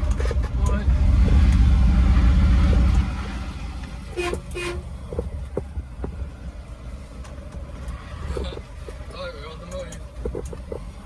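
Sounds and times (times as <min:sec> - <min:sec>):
van engine rumbling: 0:00.0 - 0:11.0
horn toots: 0:04.1 - 0:04.9.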